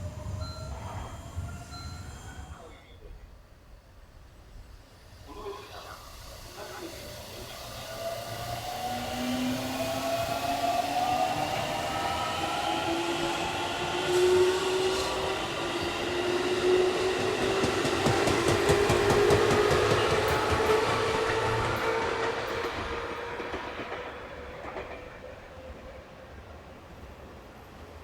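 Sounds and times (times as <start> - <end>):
train traction motors whining: 4.4 - 26.6
train wheels clacking: 4.8 - 26.3.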